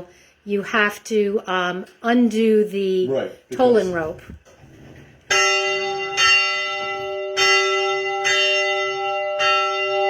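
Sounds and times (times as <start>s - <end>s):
church bell ringing: 5.3s - 10.0s.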